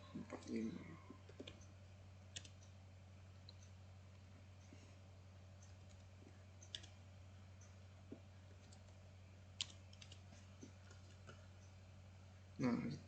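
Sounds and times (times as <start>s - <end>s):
low steady hum: 0.0s - 13.0s
computer mouse and key clicks: 1.2s - 2.8s, 5.6s - 7.0s, 8.5s - 9.0s, 9.6s - 11.8s.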